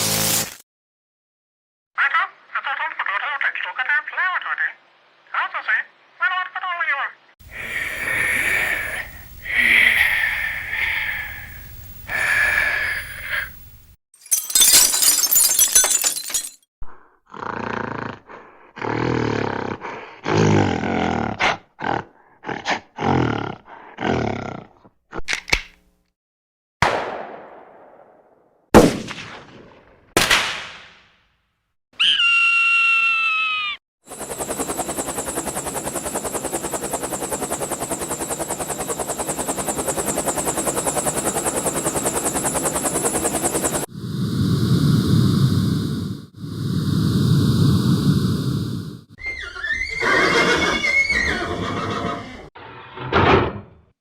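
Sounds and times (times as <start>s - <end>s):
animal's low rough calls: 17.0s - 24.8s
helicopter rotor chopping: 34.1s - 49.1s.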